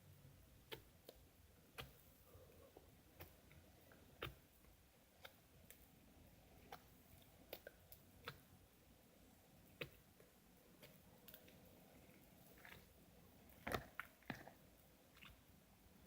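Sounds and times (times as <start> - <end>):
faint clicks and taps: 0.6 - 5.8.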